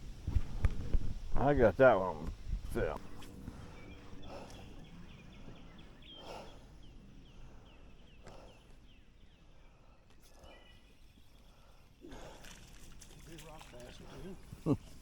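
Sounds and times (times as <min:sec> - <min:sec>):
low outdoor rumble: 0:00.0 - 0:08.2.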